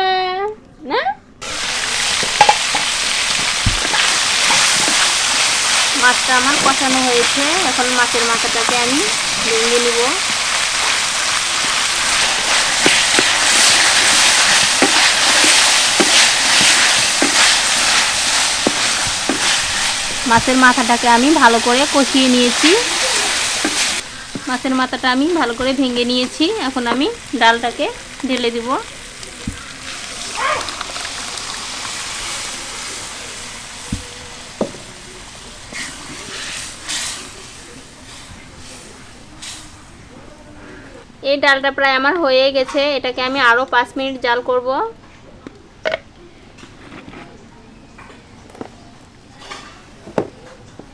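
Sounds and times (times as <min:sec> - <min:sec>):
fish frying in a pan: 0:01.4 - 0:40.2
lentils sizzling in a hot pot: 0:01.4 - 0:44.3.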